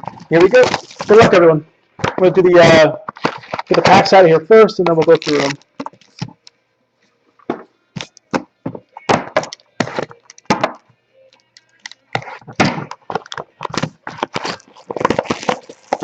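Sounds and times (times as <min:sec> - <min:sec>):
cardboard boxes torn open: 0:00.2 - 0:01.3, 0:05.0 - 0:05.6, 0:12.5 - 0:16.0.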